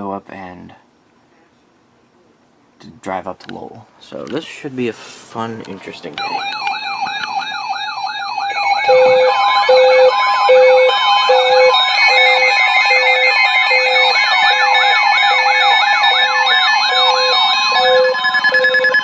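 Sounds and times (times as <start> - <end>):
high alarm tones: 6.2 - 19.0
fast siren-like sweep: 6.3 - 19.0
low pulsing beep: 13.6 - 19.0.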